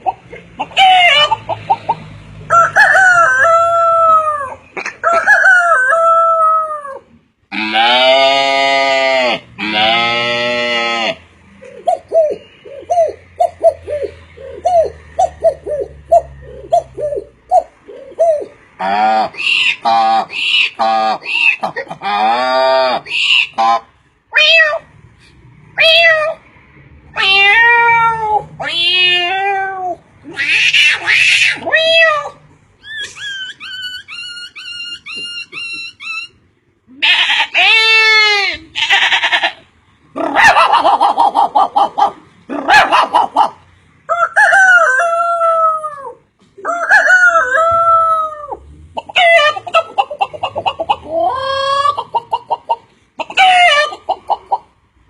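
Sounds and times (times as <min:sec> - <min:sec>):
man imitating animal calls: 0:05.9 - 0:24.8, 0:44.9 - 0:54.1.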